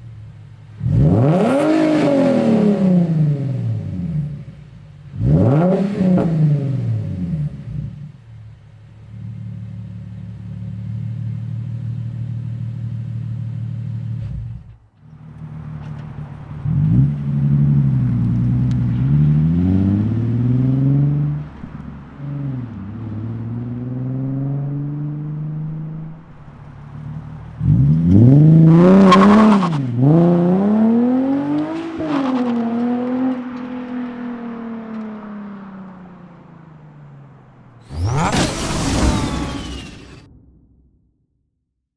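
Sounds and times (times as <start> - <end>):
car engine revving: 0.0 - 41.1
loud exhaust burst: 37.8 - 41.1.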